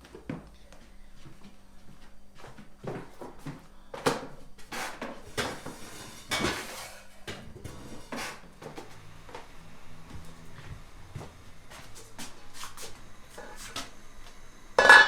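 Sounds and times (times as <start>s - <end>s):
dishes and utensils clattering: 4.8s - 8.4s, 14.8s - 15.0s.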